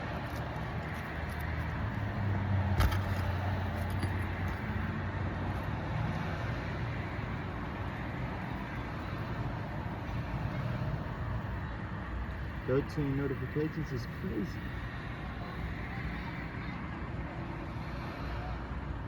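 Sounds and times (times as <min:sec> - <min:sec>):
constant rushing noise: 0:00.0 - 0:19.0.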